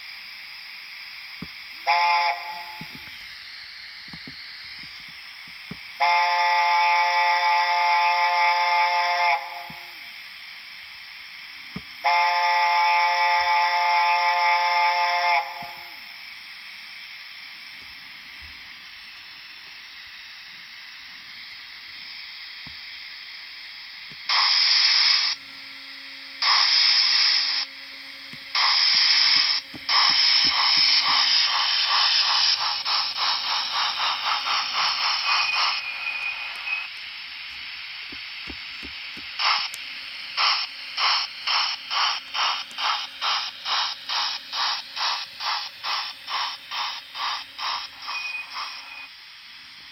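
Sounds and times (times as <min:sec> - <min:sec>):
bursts of steam: 0:00.0 - 0:17.7, 0:19.2 - 0:25.4, 0:26.4 - 0:27.7, 0:28.4 - 0:49.9
steam locomotive chuffing: 0:00.0 - 0:25.4, 0:26.2 - 0:49.8
steam hiss: 0:00.0 - 0:49.9
steam whistle: 0:01.8 - 0:03.0, 0:06.0 - 0:10.0, 0:12.0 - 0:16.2, 0:28.5 - 0:37.1.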